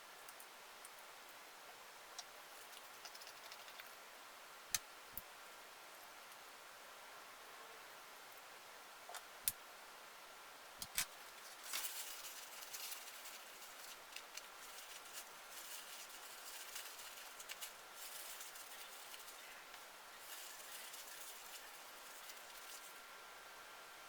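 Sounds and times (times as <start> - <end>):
light scraping and rustling: 11.0 - 23.0.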